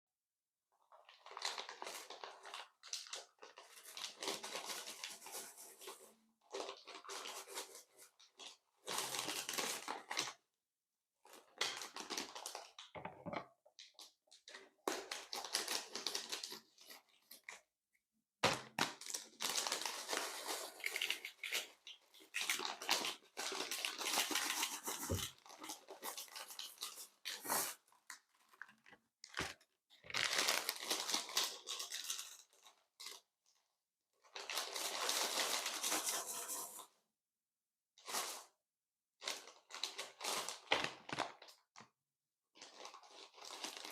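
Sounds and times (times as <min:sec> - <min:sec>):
crinkly crackling handling noises: 0:18.8 - 0:33.2, 0:42.6 - 0:43.9.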